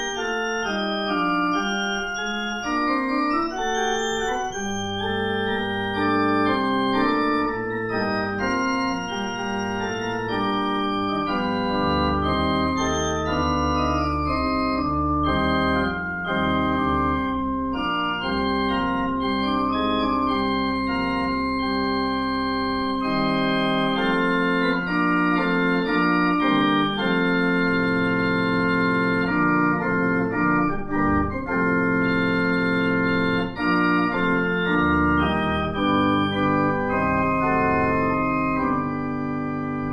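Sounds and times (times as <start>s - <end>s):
organ playing chords: 0.0s - 39.9s.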